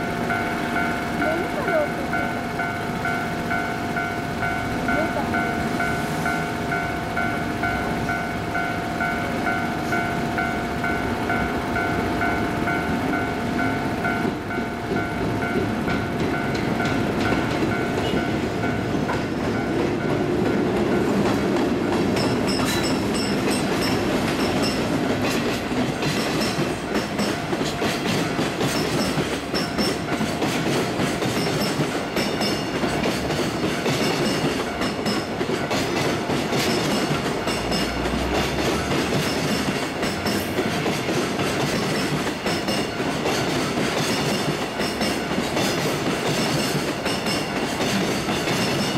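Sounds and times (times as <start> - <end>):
level crossing warning bell: 0.0 - 48.9
train wagons rumbling: 0.0 - 48.9
wheels clacking over rail joints: 0.0 - 48.9.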